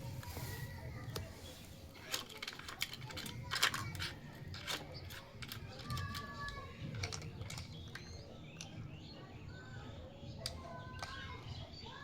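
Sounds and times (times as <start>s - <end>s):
plastic toy pieces clicking: 2.0s - 8.8s.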